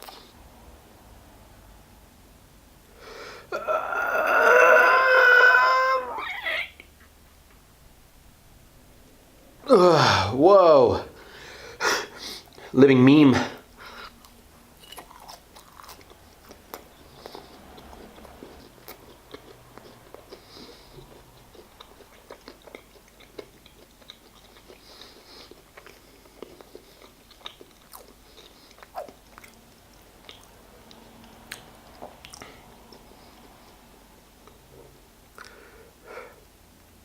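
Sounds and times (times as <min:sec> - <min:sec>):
person chewing food: 0:13.8 - 0:35.8.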